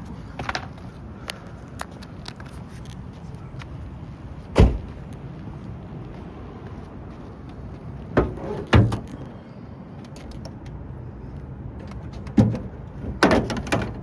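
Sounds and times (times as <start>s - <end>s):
heavy thump: 4.6s - 4.9s.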